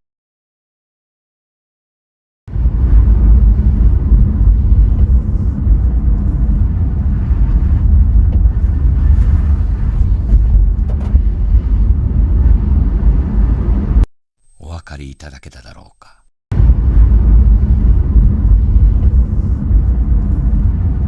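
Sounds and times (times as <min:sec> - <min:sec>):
road rumble inside car cabin: 0:02.5 - 0:14.1, 0:16.5 - 0:21.0.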